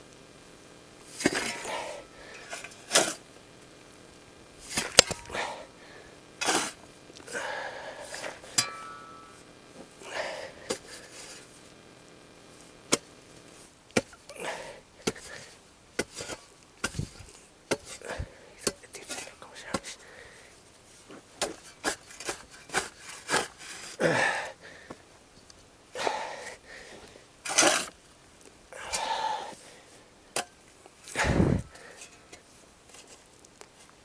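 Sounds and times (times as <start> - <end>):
stones scraping: 4.6 - 5.6.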